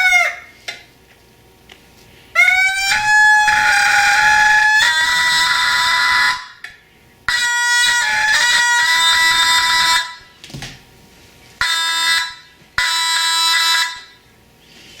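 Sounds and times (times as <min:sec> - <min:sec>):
fire alarm horn blasts: 0:02.3 - 0:06.7, 0:07.3 - 0:10.4, 0:11.6 - 0:14.4.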